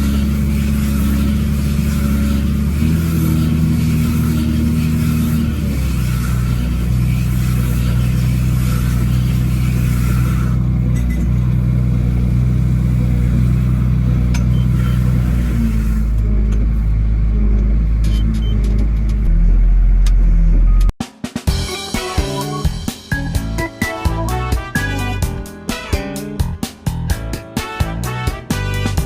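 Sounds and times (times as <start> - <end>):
tractor engine running under load: 0.0 - 20.9.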